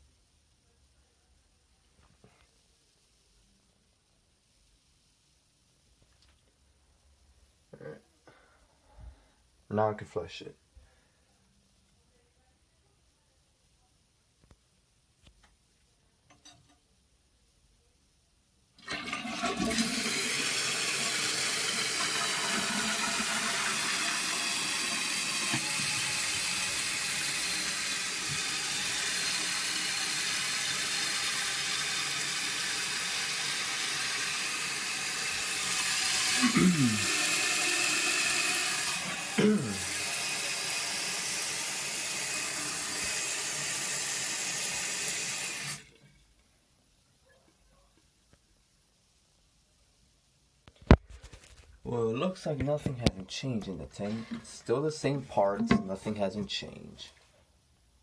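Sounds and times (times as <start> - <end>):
toilet tank refilling water: 18.8 - 46.0, 55.4 - 56.2.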